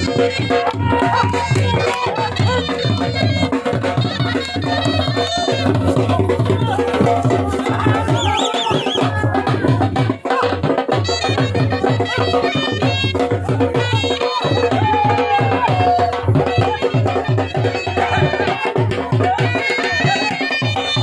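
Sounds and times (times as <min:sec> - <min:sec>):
folk melody: 0:00.0 - 0:14.8
dhol drum beating: 0:00.0 - 0:21.0.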